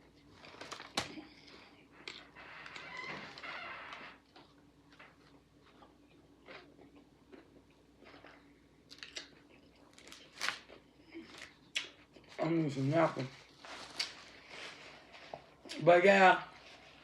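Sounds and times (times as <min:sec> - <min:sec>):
person chewing crunchy sandwich: 0:04.2 - 0:12.4.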